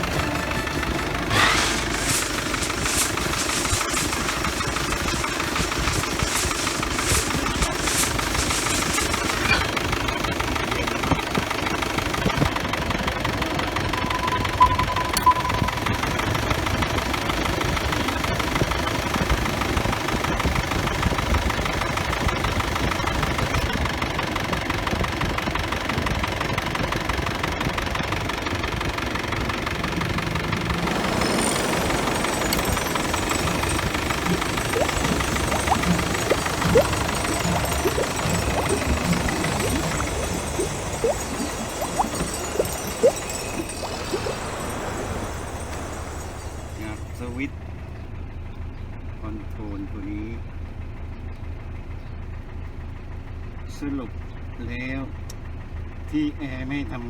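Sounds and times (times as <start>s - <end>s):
air conditioning compressor running: 0.0s - 14.1s, 16.0s - 41.8s
pickup engine idling: 0.0s - 14.2s, 16.0s - 42.5s, 43.2s - 57.0s.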